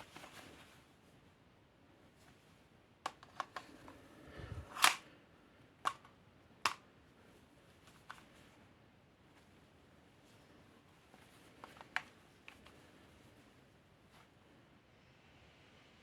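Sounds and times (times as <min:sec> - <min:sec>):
pistol mechanical clicks: 0:04.7 - 0:05.0.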